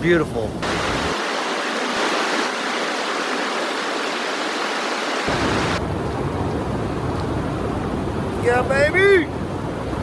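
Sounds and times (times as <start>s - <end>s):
river water rushing: 0.6s - 5.8s.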